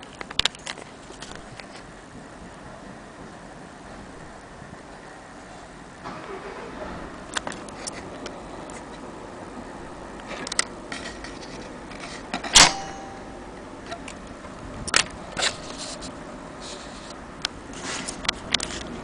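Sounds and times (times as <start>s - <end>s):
metal mechanism clicks and snaps: 12.4s - 13.3s.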